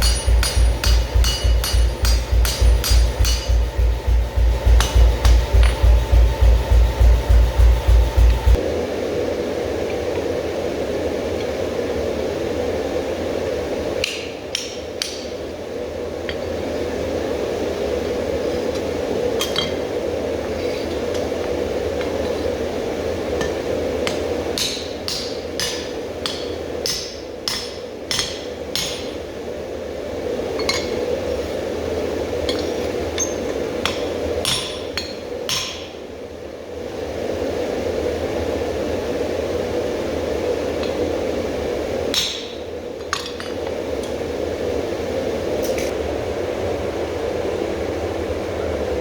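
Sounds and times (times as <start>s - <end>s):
hammer striking steel on anvil: 0.0s - 8.6s, 23.4s - 29.2s, 32.5s - 36.0s, 42.1s - 43.5s
steady drone: 0.0s - 14.0s.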